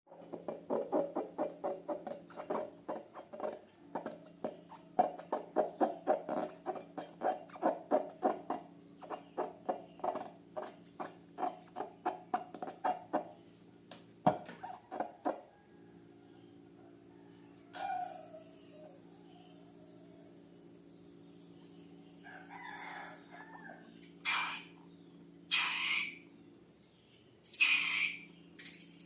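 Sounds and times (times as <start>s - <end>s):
rubber balloons squeaking: 27.5s - 29.0s.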